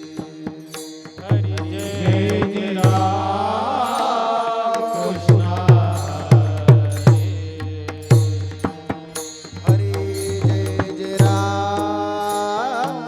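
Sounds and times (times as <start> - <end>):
chanting voices: 0.0 - 13.0
drum strokes with booming bass: 1.3 - 3.5, 5.1 - 11.8.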